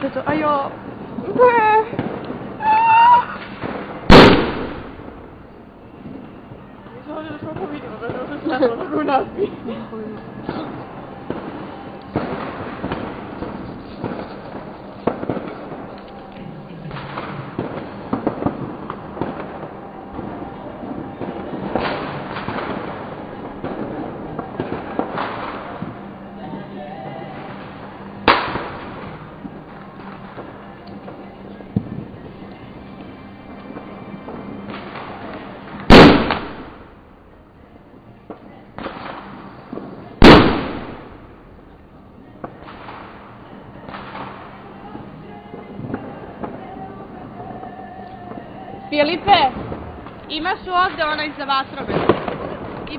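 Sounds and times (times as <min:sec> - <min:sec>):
firecrackers crackling: 0:00.0 - 0:52.9
fireworks bangs and cracks: 0:00.0 - 0:52.9.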